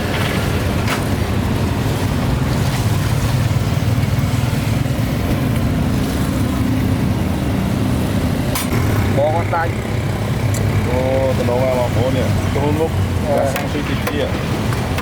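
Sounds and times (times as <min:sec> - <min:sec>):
engine humming: 0:00.0 - 0:15.0
roadside traffic: 0:00.0 - 0:15.0.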